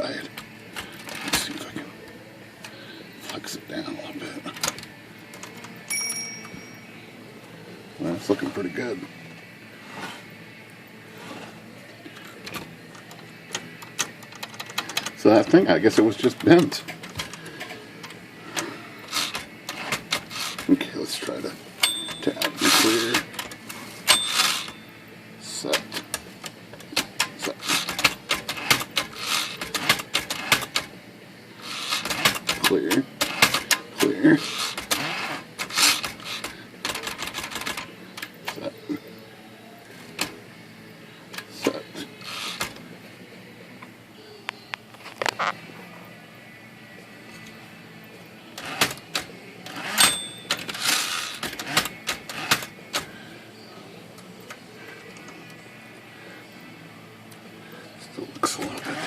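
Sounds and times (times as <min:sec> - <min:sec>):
typewriter carriage rattling: 0:12.5 - 0:18.2, 0:19.0 - 0:24.8, 0:25.6 - 0:30.9, 0:31.6 - 0:38.7, 0:48.6 - 0:53.1
typewriter mechanical clicks: 0:19.1 - 0:20.8, 0:26.8 - 0:30.9, 0:31.6 - 0:38.6, 0:48.6 - 0:53.1
typewriter clicks and clacks: 0:27.0 - 0:30.9, 0:31.9 - 0:33.8.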